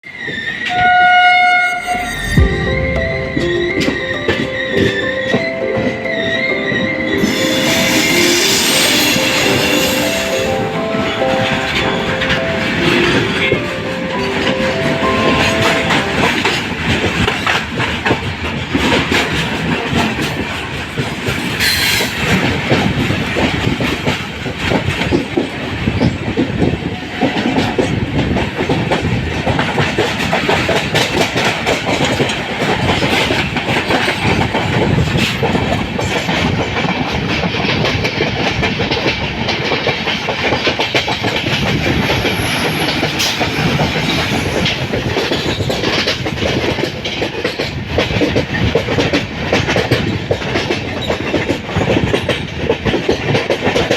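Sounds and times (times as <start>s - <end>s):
train rumbling past: 0.0s - 53.9s
loud bang: 1.4s - 5.4s
wheels clacking over rail joints: 15.3s - 53.9s.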